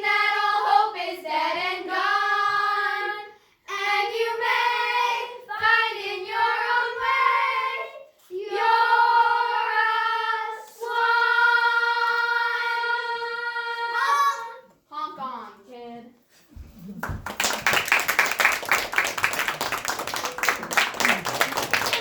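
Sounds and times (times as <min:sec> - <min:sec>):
children singing in chorus: 0:00.0 - 0:14.5.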